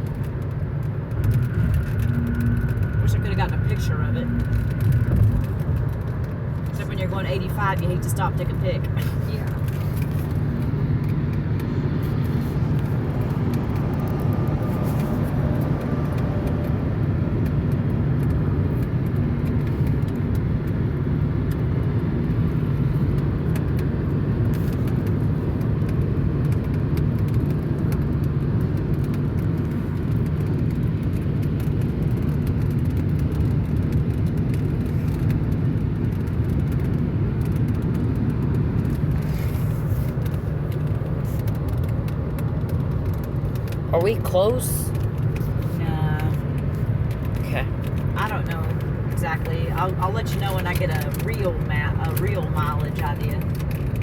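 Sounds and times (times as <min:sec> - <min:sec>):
car cabin road and engine noise: 0:00.0 - 0:54.0.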